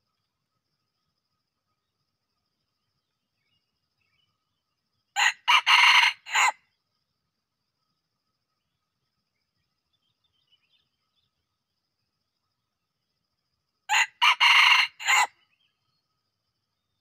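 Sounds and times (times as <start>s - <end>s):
rooster crowing: 5.2s - 6.6s, 13.9s - 15.4s.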